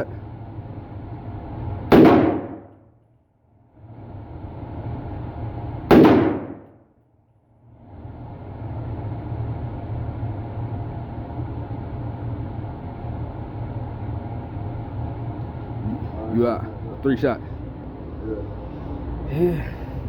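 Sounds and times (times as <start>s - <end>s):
rifle shots: 1.9s - 2.7s, 5.9s - 6.7s.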